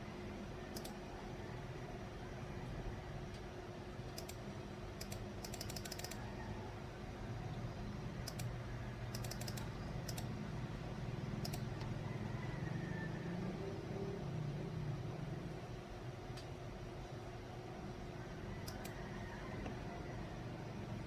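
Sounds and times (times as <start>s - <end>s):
steady low hum: 0.0s - 21.0s
computer keyboard typing: 0.7s - 1.1s, 4.0s - 6.2s, 8.2s - 10.3s, 11.4s - 12.0s, 18.6s - 19.0s.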